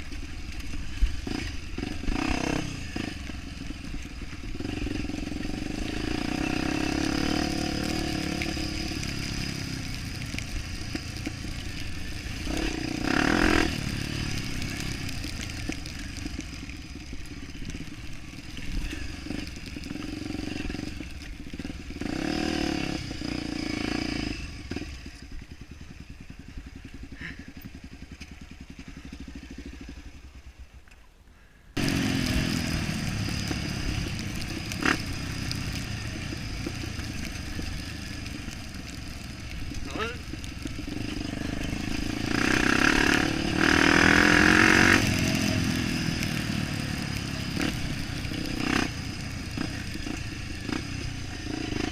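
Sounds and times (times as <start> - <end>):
motorbike engine revving: 0.7 - 17.1, 18.6 - 30.4, 31.8 - 51.9
loud engine sound: 31.8 - 36.6.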